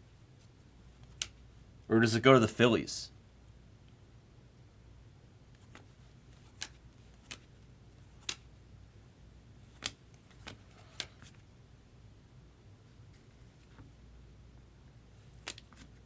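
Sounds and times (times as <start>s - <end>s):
faint low hum: 0.0s - 16.0s
trading cards clicking and tapping: 5.6s - 8.5s, 9.7s - 11.4s.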